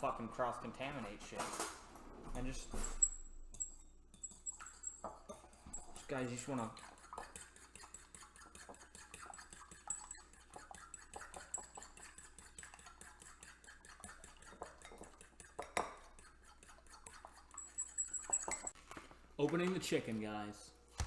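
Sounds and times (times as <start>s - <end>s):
fork clicking against bowl: 3.6s - 18.8s.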